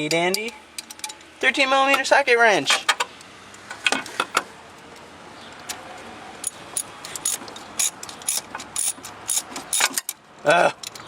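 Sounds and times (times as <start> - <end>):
metal socket wrench clinking: 0.0 - 1.3, 6.4 - 10.2
ratchet clicking: 6.4 - 10.2.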